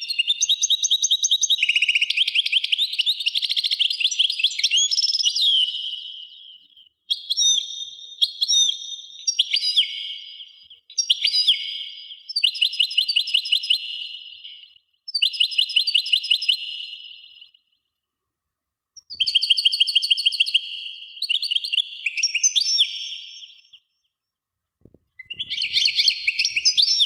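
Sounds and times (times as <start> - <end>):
songbird trilling: 25.2 - 27.0.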